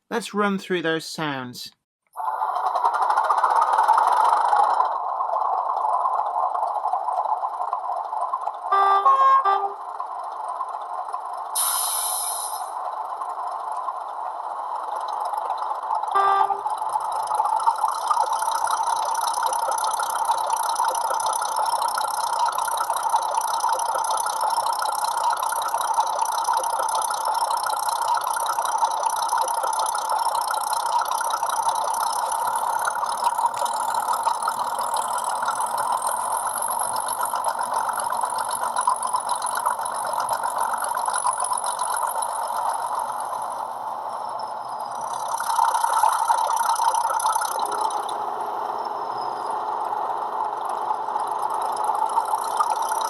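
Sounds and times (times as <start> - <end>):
tinny diesel engine running: 2.2 - 53.0
faint rising whine: 41.3 - 53.0.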